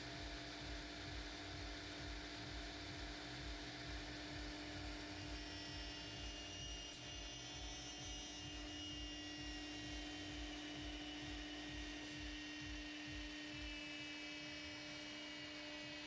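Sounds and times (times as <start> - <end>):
electrical hum: 0.0 - 16.0
faint high whine: 0.0 - 16.0.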